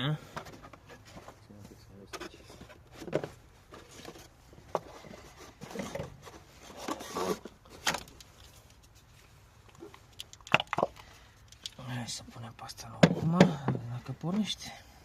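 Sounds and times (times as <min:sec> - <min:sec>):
rustling: 0:00.2 - 0:11.6.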